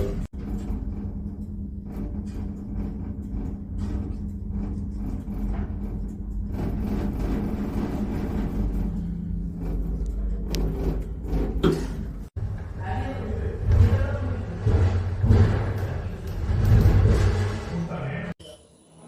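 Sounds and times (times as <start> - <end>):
lift rumbling and humming: 0.0 - 18.4.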